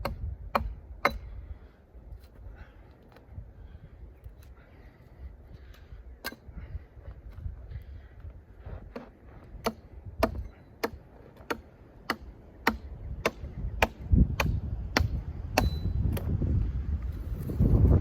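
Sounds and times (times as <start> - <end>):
wind noise on microphone: 0.0 - 4.4, 5.2 - 10.6, 12.7 - 18.0
hand tool striking: 9.0 - 16.2.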